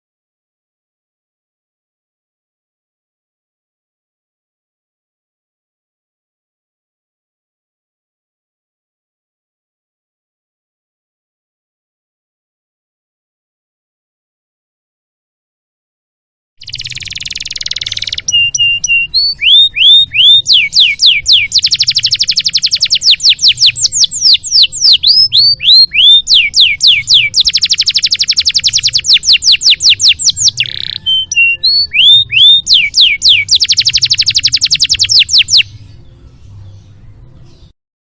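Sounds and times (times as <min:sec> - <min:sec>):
canary singing: 0:16.6 - 0:37.8.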